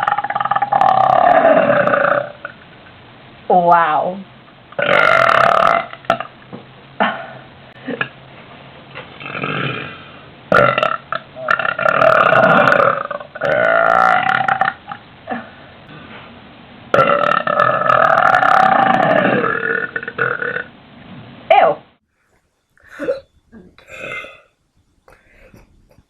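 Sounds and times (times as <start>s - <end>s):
woman burping loudly: 0.0s - 2.6s, 4.8s - 6.4s, 9.2s - 15.6s, 16.9s - 20.7s, 23.8s - 24.5s.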